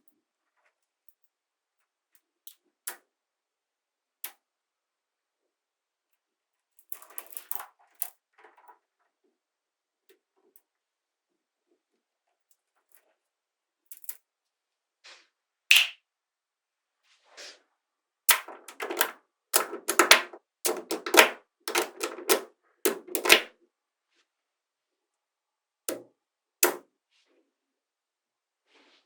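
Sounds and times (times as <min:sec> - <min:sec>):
magnetic balls clicking together: 0:15.7 - 0:15.9, 0:18.3 - 0:23.5.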